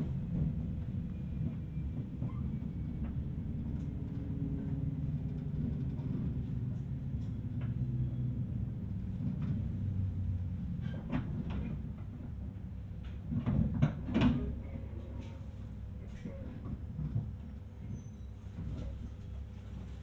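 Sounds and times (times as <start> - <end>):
train car low hum: 0.0 - 20.0.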